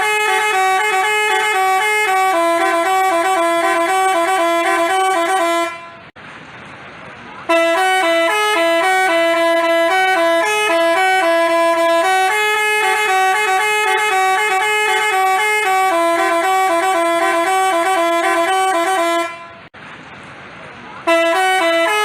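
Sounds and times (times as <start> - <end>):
musical bus horn melody: 0.0 - 6.2, 7.5 - 19.8, 21.0 - 22.0.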